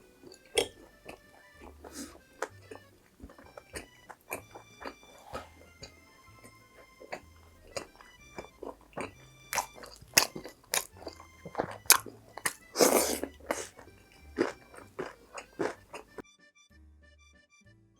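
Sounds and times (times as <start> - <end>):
crunching crispy fried food: 0.0 - 16.2
light background music: 0.0 - 17.9.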